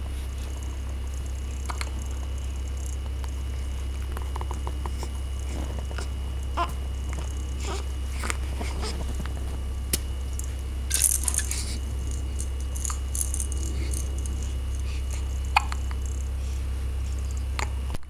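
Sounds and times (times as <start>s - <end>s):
steady low hum: 0.0s - 18.0s
baby toy rattling: 10.3s - 16.3s.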